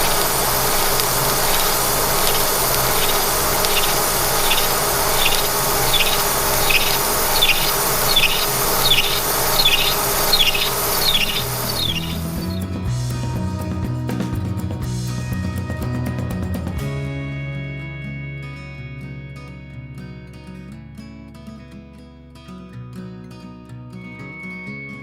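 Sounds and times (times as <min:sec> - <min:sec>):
milling cutter squeal: 0:00.0 - 0:12.7
milling machine running: 0:00.0 - 0:12.8.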